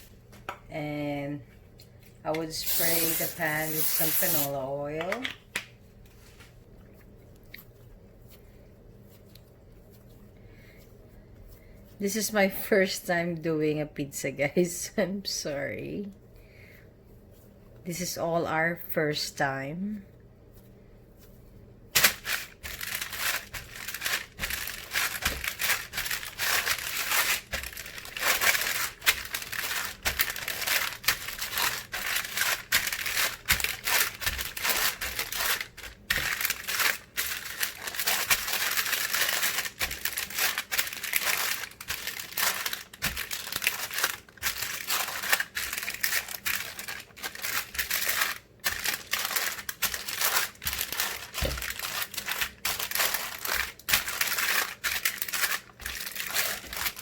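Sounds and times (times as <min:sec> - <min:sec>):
packaging crinkling and rustling: 0:21.9 - 0:57.0.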